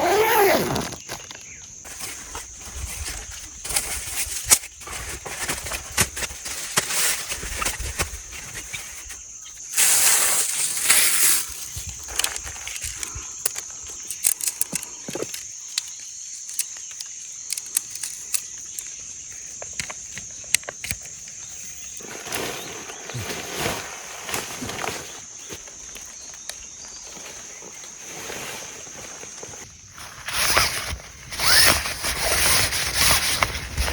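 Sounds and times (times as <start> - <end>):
insects droning: 0.0 - 33.9
loud rustling: 30.0 - 33.9.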